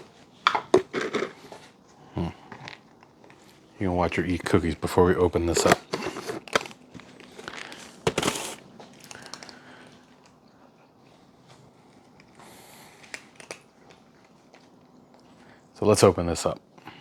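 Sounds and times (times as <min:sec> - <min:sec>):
cat crunching dry treats: 0:00.8 - 0:10.4, 0:11.8 - 0:14.8.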